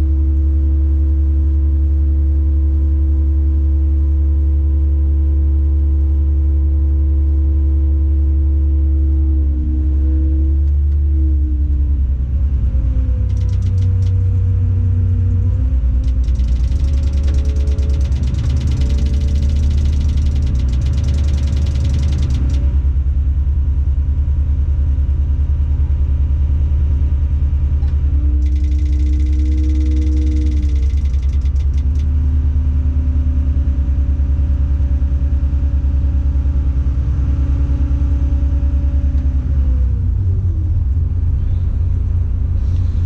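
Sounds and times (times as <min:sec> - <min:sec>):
diesel engine running: 0:00.0 - 0:43.0
rapid ticking: 0:13.3 - 0:14.2, 0:16.0 - 0:22.7, 0:28.4 - 0:32.1.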